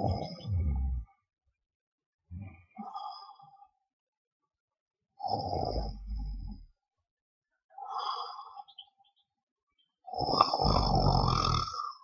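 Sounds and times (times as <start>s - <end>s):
man snoring: 10.2s - 11.8s.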